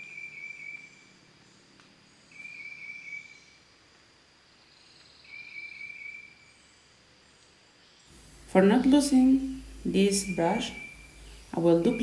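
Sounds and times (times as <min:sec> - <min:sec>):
faint background hiss: 0:00.0 - 0:12.0
high trilling call: 0:08.2 - 0:12.0.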